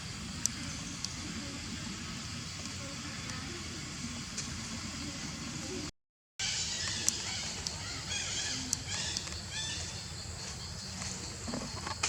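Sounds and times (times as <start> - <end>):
high chirping animal calls: 6.4 - 10.1.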